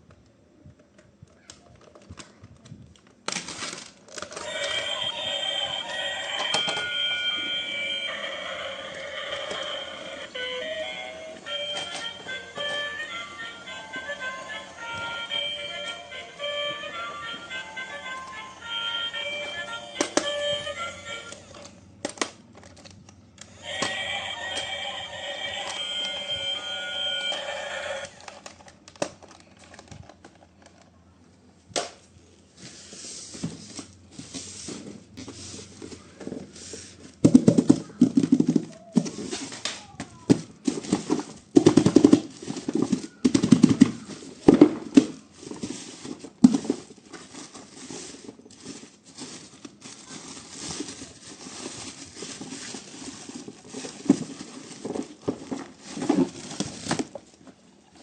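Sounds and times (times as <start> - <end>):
packaging crinkling and clicking: 1.4 - 5.1, 27.3 - 30.9, 40.7 - 58.0
music: 4.4 - 21.4, 23.6 - 28.1.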